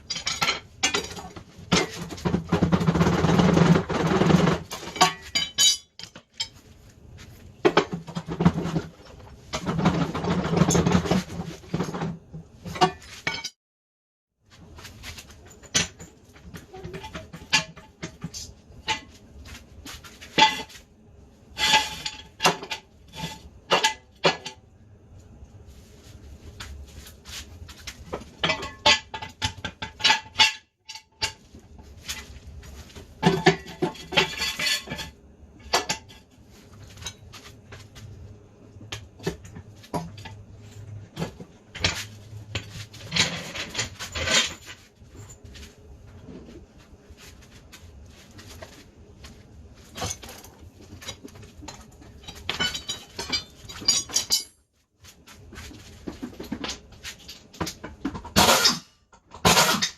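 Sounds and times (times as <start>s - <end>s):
metal tools clinking and clattering: 0.0s - 2.9s, 3.8s - 6.6s, 33.2s - 37.3s, 39.5s - 45.7s, 49.8s - 54.6s.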